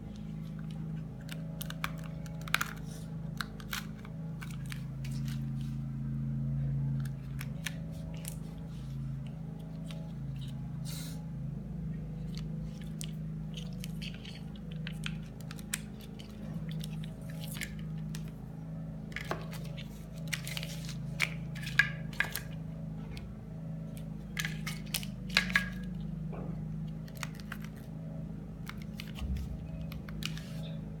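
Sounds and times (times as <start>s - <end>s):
steady low hum: 0.0s - 31.0s
packaging crinkles and clicks: 24.0s - 26.0s, 26.9s - 27.9s.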